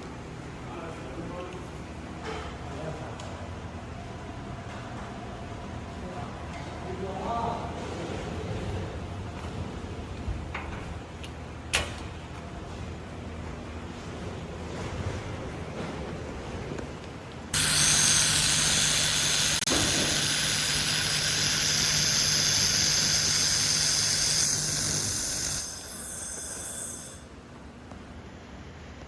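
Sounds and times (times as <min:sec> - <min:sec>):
laser firing hiss: 0:17.6 - 0:26.4.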